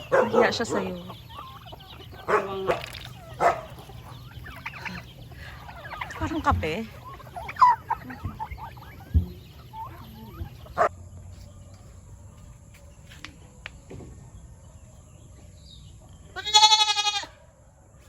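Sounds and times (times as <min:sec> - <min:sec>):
goat bleating: 0:16.3 - 0:17.4.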